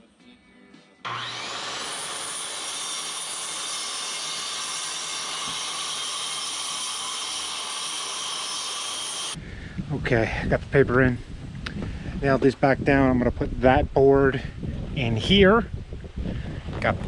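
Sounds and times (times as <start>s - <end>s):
power tool motor whirring: 1.1s - 9.4s.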